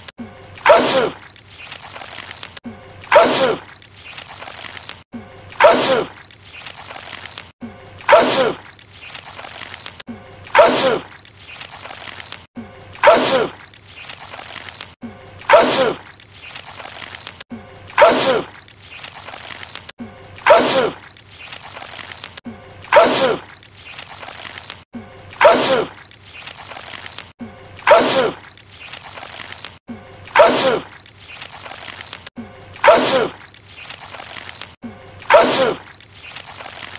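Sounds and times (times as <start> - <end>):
man sneezing loudly: 20.5 - 21.0, 27.9 - 28.4, 35.3 - 35.8.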